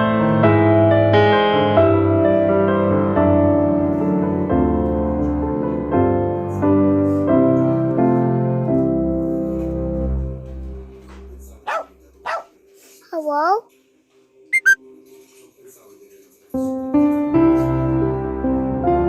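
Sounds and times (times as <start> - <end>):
slow piano music: 0.0 - 11.8, 16.6 - 19.0.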